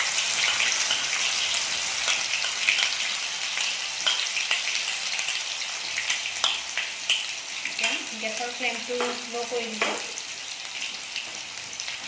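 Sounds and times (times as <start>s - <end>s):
paste frying in hot oil: 0.0s - 12.0s.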